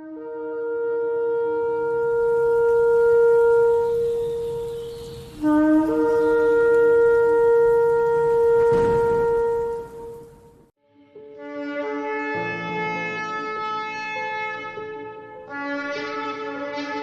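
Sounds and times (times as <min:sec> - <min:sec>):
shofar blasts: 0:00.0 - 0:10.7.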